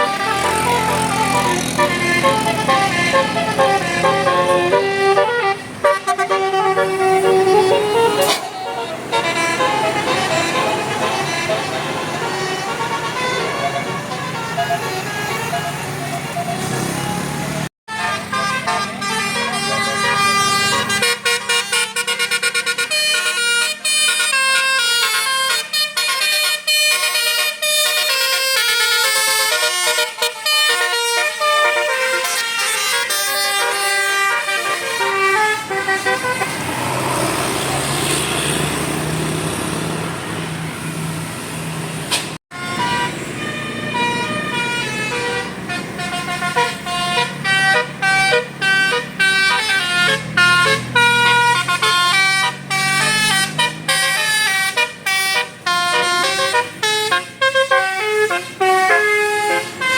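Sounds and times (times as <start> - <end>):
bus musical horn melodies: 0.0 - 38.9, 42.0 - 59.9
bus engine running: 0.0 - 59.9.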